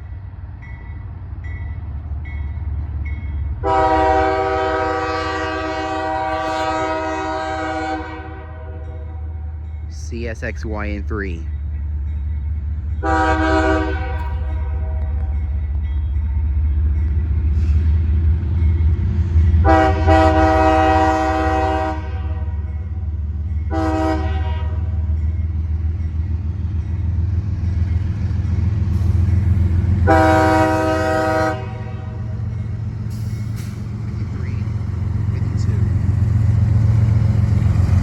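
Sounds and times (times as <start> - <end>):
passing train rumble: 0.0 - 38.0
locomotive air horn: 3.6 - 9.2, 13.0 - 15.3, 19.6 - 22.5, 23.7 - 25.0, 30.0 - 32.3.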